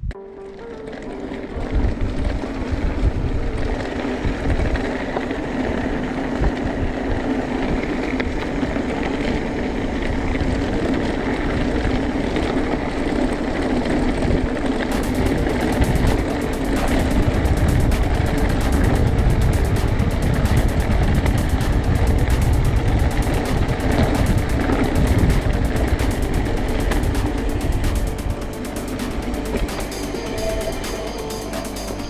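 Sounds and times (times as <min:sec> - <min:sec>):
wind buffeting: 0:14.2 - 0:30.6
rapid even ticking: 0:14.9 - 0:32.0.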